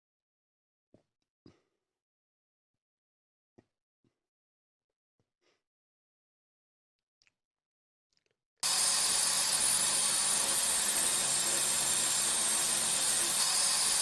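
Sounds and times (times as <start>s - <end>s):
table saw cutting wood: 8.6s - 14.0s.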